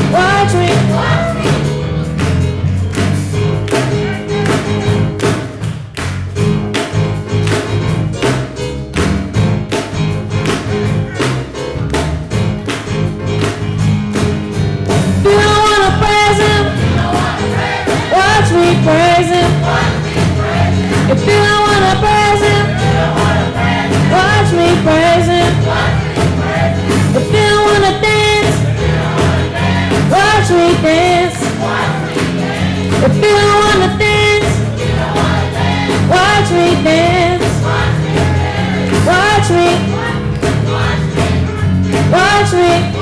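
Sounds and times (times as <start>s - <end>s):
gospel choir singing: 0.0s - 5.9s, 15.2s - 43.0s
bass line: 0.0s - 43.0s
drum kit beats: 0.0s - 43.0s.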